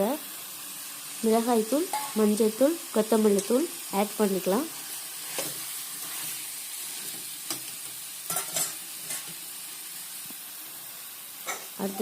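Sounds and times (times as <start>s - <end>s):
chicken sizzling in oil: 0.0s - 12.0s
spoon stirring and knocking pan: 1.8s - 2.2s, 5.3s - 6.4s, 7.0s - 9.4s.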